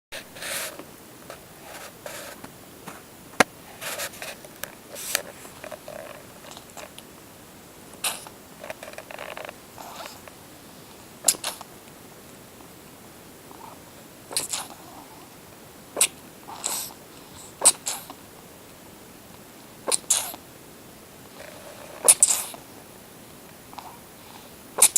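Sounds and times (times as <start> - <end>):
kitten sneezing and snorting: 8.0 - 8.3, 11.2 - 11.7, 14.3 - 14.9, 16.0 - 18.2, 19.8 - 20.4, 21.4 - 22.6.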